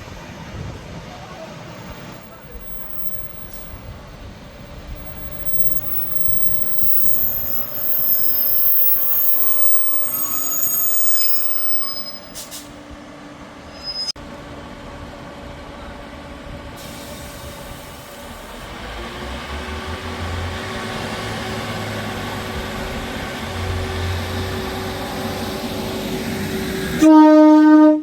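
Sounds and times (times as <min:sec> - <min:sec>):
train rumble: 0:00.0 - 0:27.5
train wheels squealing: 0:01.8 - 0:12.7, 0:13.7 - 0:14.2.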